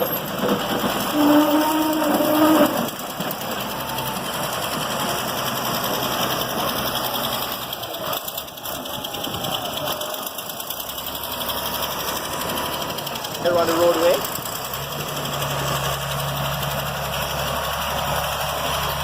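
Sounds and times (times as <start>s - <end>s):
heavy machinery diesel engine: 0.0s - 19.0s.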